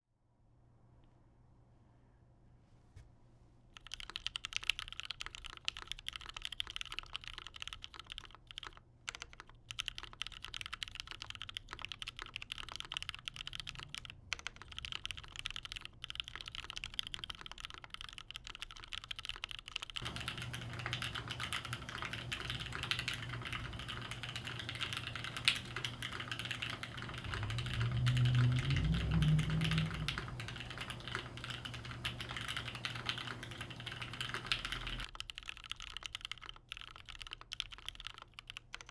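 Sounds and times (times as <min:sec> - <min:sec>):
mechanical keyboard clacking: 0:03.8 - 0:38.9
low background noise: 0:18.4 - 0:36.0
low rumble: 0:26.8 - 0:32.0.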